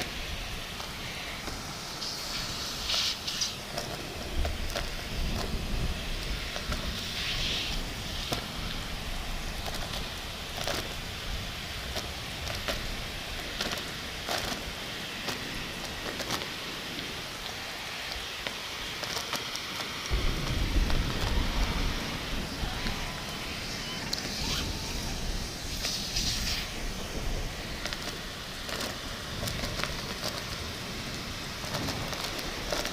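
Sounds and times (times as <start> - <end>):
heavy rain: 0.0 - 32.9
low rumble: 20.1 - 32.9.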